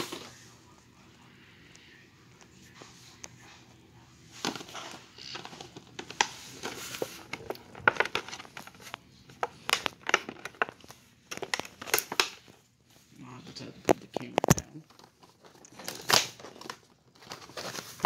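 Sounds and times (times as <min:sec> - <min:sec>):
crinkling plastic and card: 0:04.3 - 0:12.7, 0:13.3 - 0:18.0.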